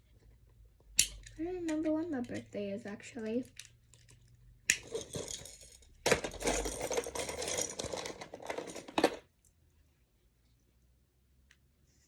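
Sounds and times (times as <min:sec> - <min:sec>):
objects rustling and clattering: 0:03.9 - 0:09.3.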